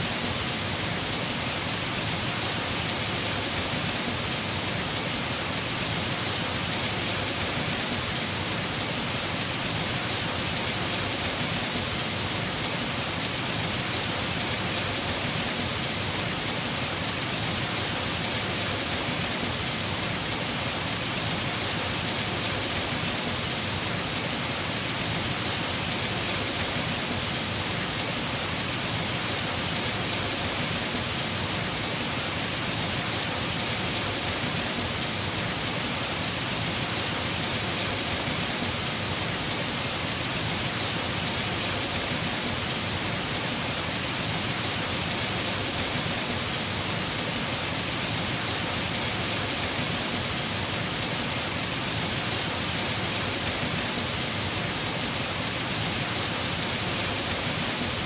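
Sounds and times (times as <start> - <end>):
heavy rain on a roof: 0.0 - 58.0.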